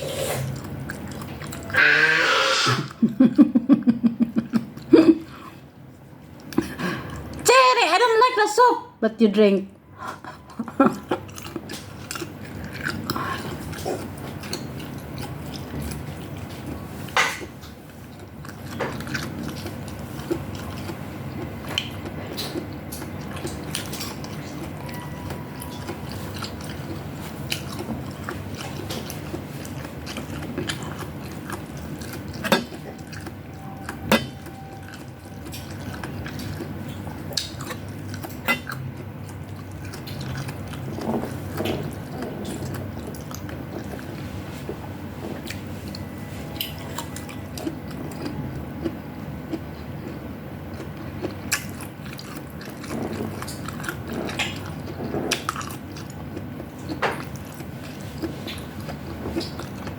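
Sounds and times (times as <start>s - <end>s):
chewing and eating: 0.0s - 7.5s, 10.0s - 59.9s.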